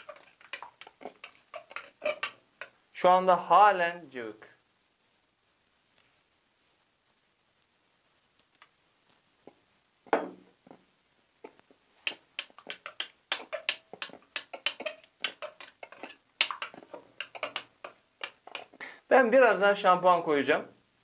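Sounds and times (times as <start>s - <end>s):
wet slime squelching: 0.0s - 2.8s, 11.4s - 18.8s.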